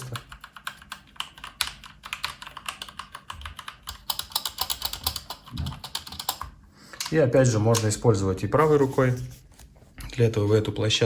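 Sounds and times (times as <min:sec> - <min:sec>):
mechanical keyboard typing: 0:00.0 - 0:07.2.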